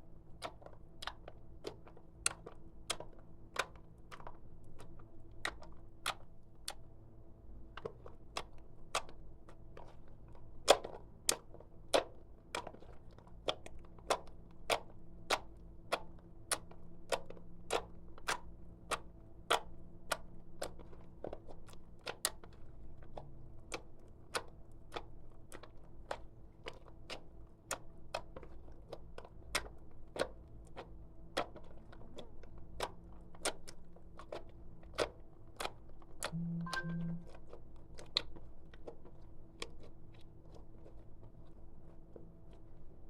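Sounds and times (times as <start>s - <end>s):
faint steady hum: 30.9s - 43.0s.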